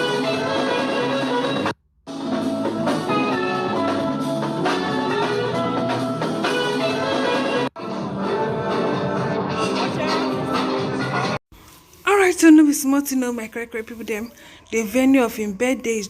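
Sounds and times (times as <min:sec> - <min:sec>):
upbeat music with drums and brass: 0:00.0 - 0:11.4.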